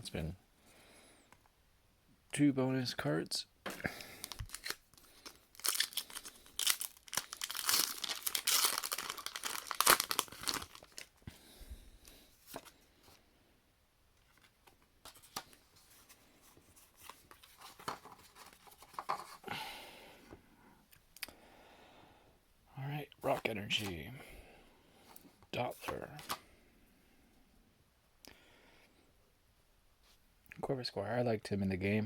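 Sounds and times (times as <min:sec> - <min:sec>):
cards rustling and clicking: 0:03.7 - 0:11.1, 0:12.1 - 0:12.8, 0:14.2 - 0:19.4, 0:23.3 - 0:24.0, 0:25.2 - 0:26.5
foil wrapper crinkling and tearing: 0:04.2 - 0:11.2.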